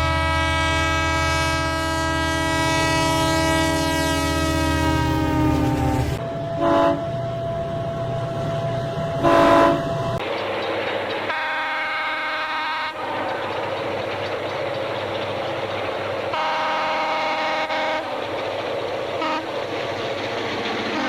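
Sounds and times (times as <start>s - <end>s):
locomotive air horn: 0.0s - 10.2s, 11.3s - 13.3s, 16.3s - 18.1s, 19.2s - 19.5s
passing train noise: 0.0s - 21.0s
train engine rumble: 0.0s - 21.0s.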